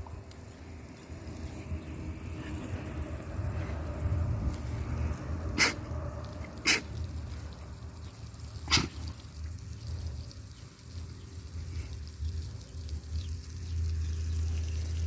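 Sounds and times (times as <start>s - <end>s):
low steady rumble: 0.0s - 15.0s
pig sneezing: 5.6s - 5.8s, 6.5s - 7.0s, 8.6s - 9.1s.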